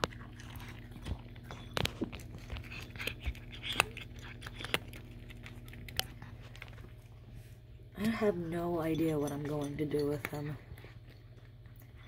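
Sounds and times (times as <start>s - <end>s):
cat crunching food: 0.0s - 7.4s, 9.4s - 12.0s.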